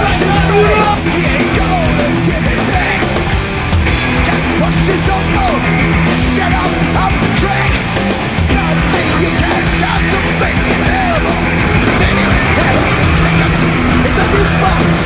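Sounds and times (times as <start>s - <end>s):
loud rock music: 0.0s - 15.0s.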